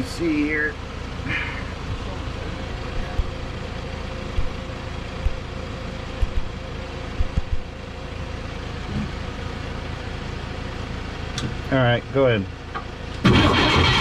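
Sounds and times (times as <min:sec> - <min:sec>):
mechanical hum: 0:00.9 - 0:11.7
dull low thumps: 0:02.9 - 0:03.4, 0:04.3 - 0:04.6, 0:05.2 - 0:05.5, 0:06.2 - 0:06.6, 0:07.2 - 0:07.7.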